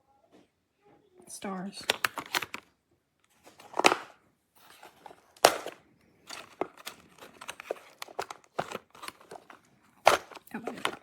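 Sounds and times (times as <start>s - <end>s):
packaging rustling: 1.8s - 2.7s, 3.3s - 11.0s.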